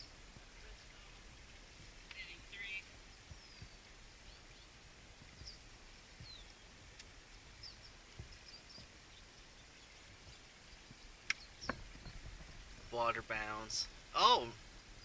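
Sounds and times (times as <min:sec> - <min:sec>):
faint bird chirps: 0:02.3 - 0:06.8, 0:07.5 - 0:12.3.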